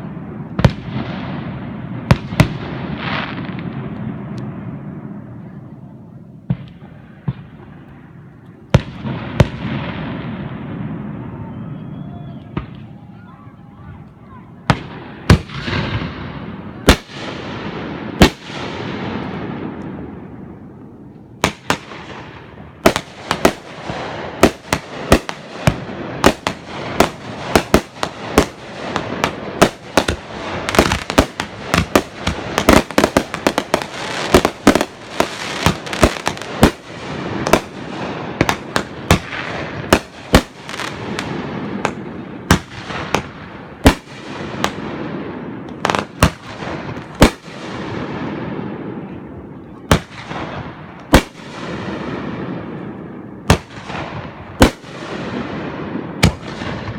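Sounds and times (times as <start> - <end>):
fireworks bangs: 0.0 - 56.9
fireworks rumble and crackle: 0.0 - 56.9.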